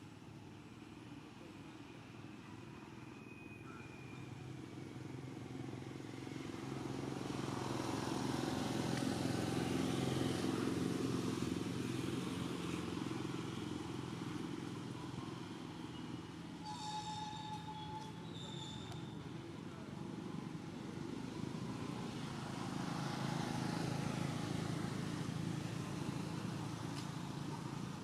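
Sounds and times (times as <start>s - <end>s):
vehicle engine passing by: 6.2s - 14.6s, 21.3s - 28.0s.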